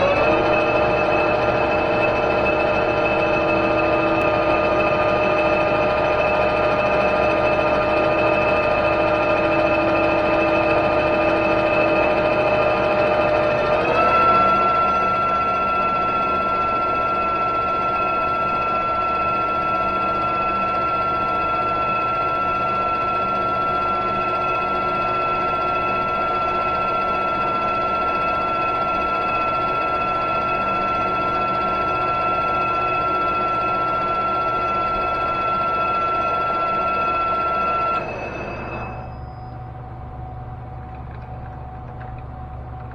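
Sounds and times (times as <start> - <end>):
lathe cutting whine: 0.0 - 42.9
lathe running: 0.0 - 42.9.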